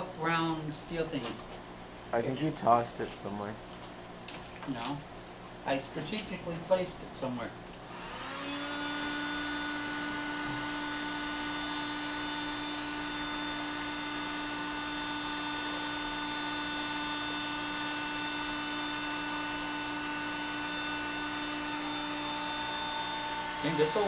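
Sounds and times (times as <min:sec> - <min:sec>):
heat gun humming and whining: 0:07.7 - 0:24.0.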